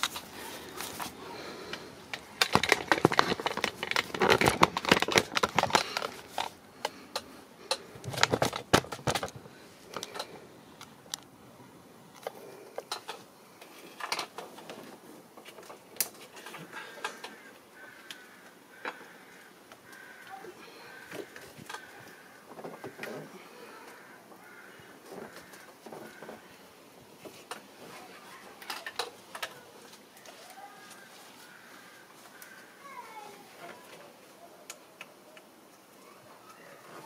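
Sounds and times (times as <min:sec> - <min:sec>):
clicks and rattles of parts: 0:00.0 - 0:11.3, 0:12.1 - 0:17.4, 0:21.0 - 0:23.3, 0:28.5 - 0:30.5.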